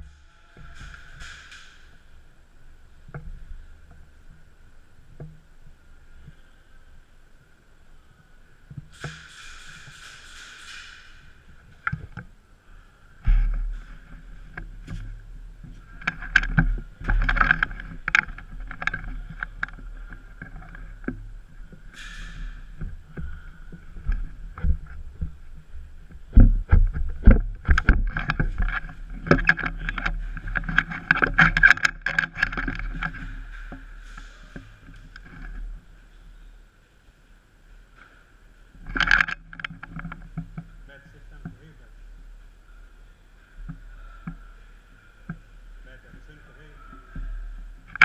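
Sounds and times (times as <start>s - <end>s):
knocks clicks and scrapes: 8.7s - 12.3s, 13.2s - 35.8s, 38.8s - 40.7s, 47.2s - 48.0s.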